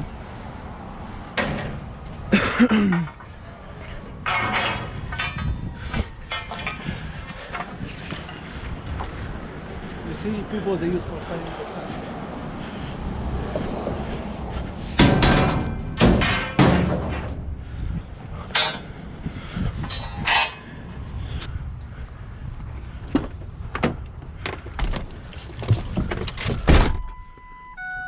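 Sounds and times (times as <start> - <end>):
metal poles clanking: 1.2 - 9.6, 14.8 - 21.5.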